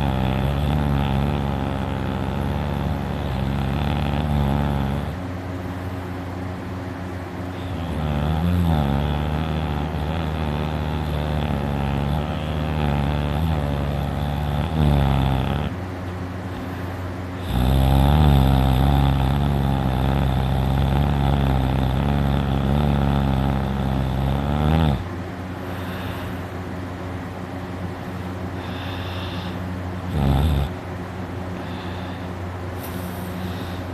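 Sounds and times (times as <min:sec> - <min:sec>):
person snoring loudly: 0:00.0 - 0:05.3, 0:07.5 - 0:15.8, 0:17.4 - 0:26.5, 0:28.6 - 0:30.8.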